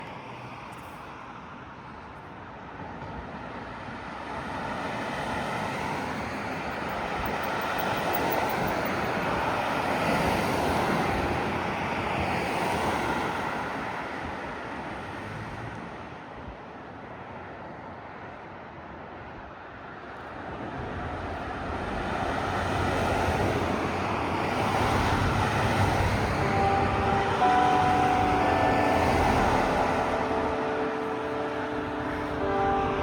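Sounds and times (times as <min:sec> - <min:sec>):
vehicle passing by: 0:22.4 - 0:33.0.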